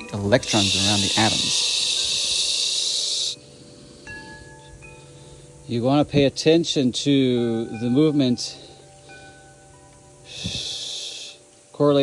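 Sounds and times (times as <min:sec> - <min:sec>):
person breathy exhale: 0:00.6 - 0:03.4, 0:10.3 - 0:11.4
faint ringing tones: 0:03.3 - 0:12.0.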